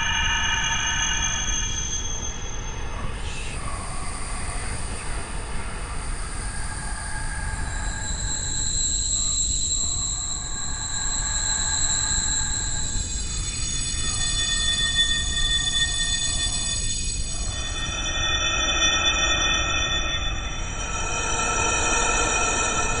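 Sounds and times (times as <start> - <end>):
shrill squealing tones: 8.1 - 21.7
low rumble: 17.2 - 23.0.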